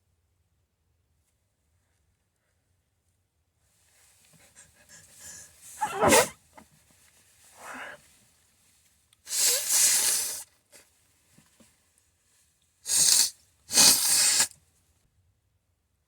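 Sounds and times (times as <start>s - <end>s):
person sneezing: 5.8s - 6.4s, 7.6s - 8.0s, 12.9s - 14.5s.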